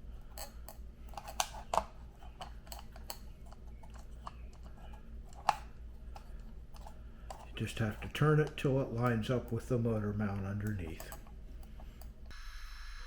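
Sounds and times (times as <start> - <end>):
faint low hum: 0.0 - 13.0.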